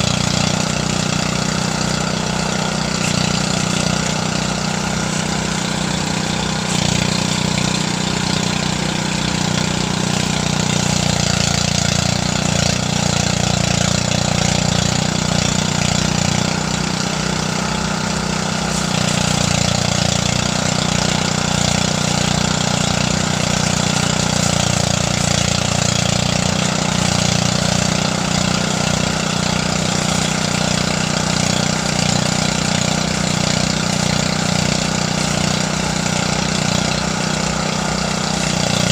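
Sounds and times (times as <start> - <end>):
rice thresher engine hum: 0.0 - 38.9
rushing hiss: 1.2 - 9.4, 18.1 - 20.4.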